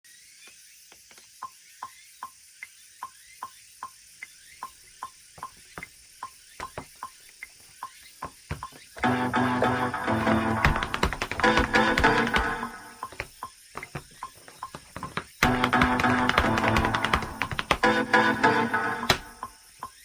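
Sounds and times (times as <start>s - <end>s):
rhythmic clicking: 9.0s - 20.0s.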